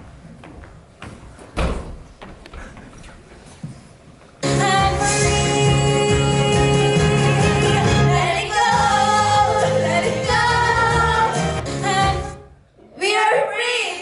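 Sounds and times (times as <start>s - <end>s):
song with singing: 4.4s - 12.5s.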